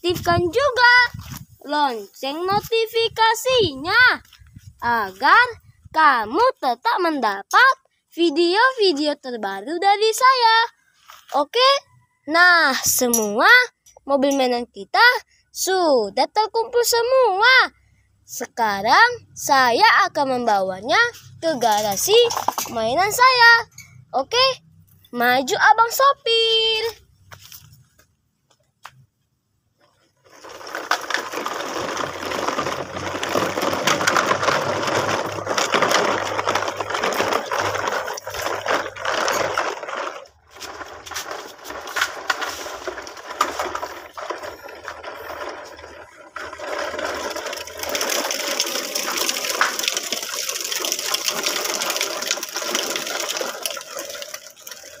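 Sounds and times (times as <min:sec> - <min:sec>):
toy truck rolling on floor: 0:20.9 - 0:25.1, 0:29.8 - 0:55.0
toy cars rattling: 0:21.0 - 0:25.0, 0:29.9 - 0:55.0.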